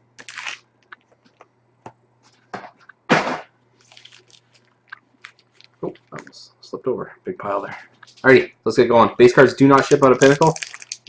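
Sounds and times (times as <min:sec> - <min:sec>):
wrappers crinkling: 0:00.2 - 0:01.4, 0:03.8 - 0:06.2, 0:09.7 - 0:11.0.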